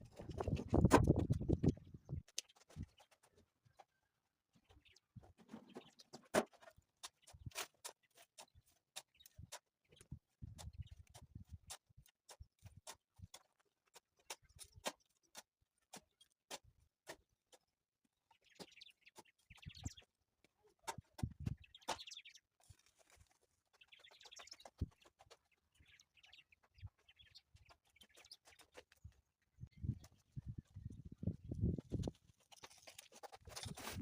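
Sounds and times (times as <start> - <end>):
scraping or rustling: 31.7 - 34.0.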